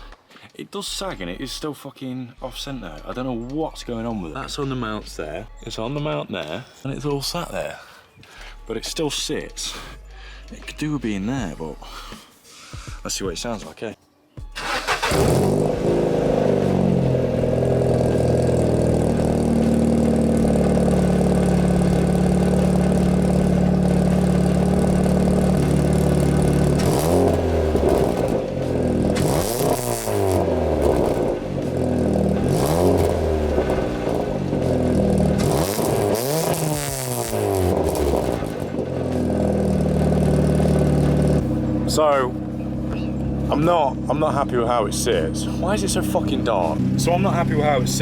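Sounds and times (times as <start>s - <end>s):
car engine starting and idling: 14.5s - 48.0s
engine revving: 14.6s - 48.0s.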